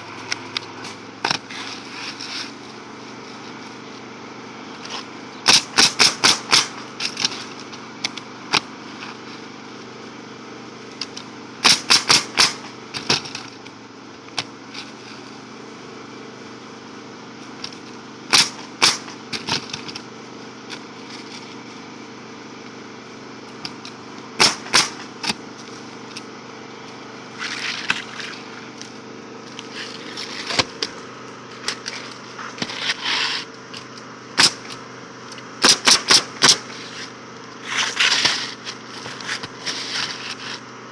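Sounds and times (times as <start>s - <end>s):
steady low hum: 0.0s - 40.9s
shingles scraping: 0.8s - 3.8s, 27.3s - 34.8s, 35.6s - 40.7s
nail gun firing into shingles: 5.4s - 7.4s, 11.6s - 13.5s, 17.6s - 20.0s, 24.4s - 25.4s, 34.4s - 34.8s, 35.6s - 40.6s.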